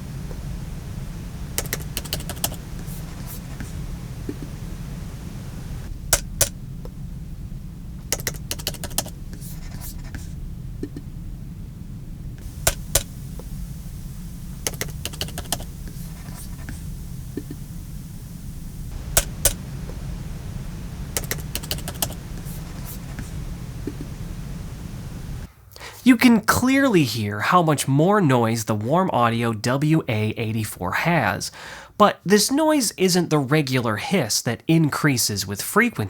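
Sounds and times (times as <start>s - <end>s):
low rumble and hiss: 0.0s - 36.0s
laptop keyboard typing: 1.4s - 4.6s, 6.1s - 6.6s, 8.1s - 10.3s, 12.4s - 13.6s, 14.6s - 17.7s, 19.0s - 24.4s.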